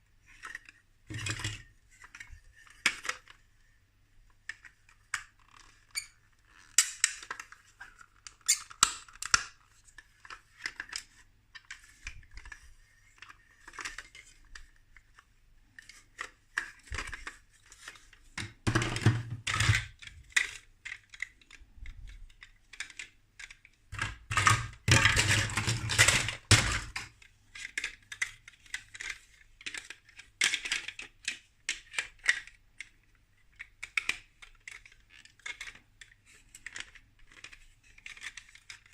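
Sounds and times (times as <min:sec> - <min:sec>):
plastic bricks clicking: 0:15.8 - 0:38.9
rattling plastic pieces: 0:15.8 - 0:38.9.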